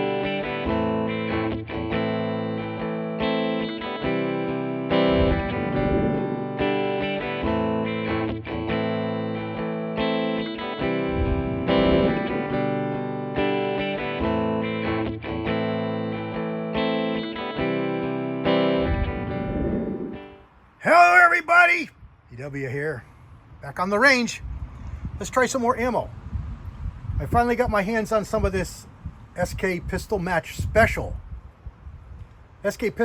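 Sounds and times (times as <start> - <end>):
distorted electric guitar chords: 0.0 - 20.4.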